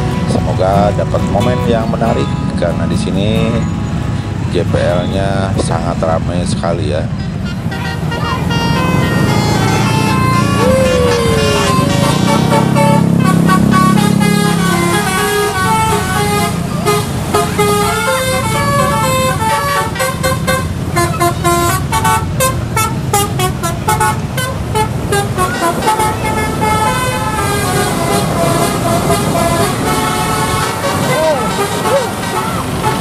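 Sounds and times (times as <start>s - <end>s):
train horn: 7.4s - 33.0s.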